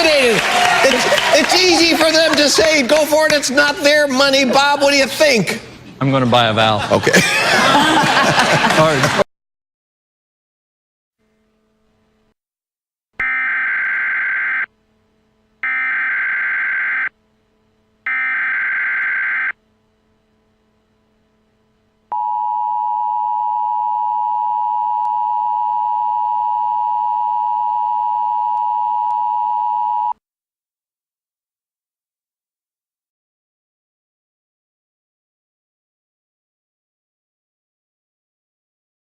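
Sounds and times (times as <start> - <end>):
data tone bursts: 13.2 - 14.7, 15.6 - 17.1, 18.1 - 19.6
two-tone attention signal: 13.2 - 14.7.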